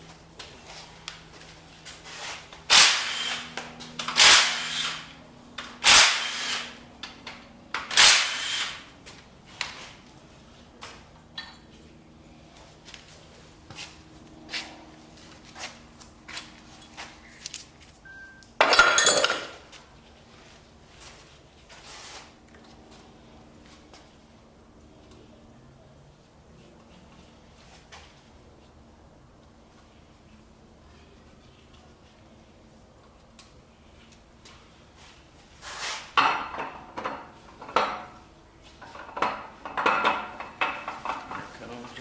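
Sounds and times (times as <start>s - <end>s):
loud sharp tool bursts: 2.7s - 6.8s, 7.8s - 8.9s.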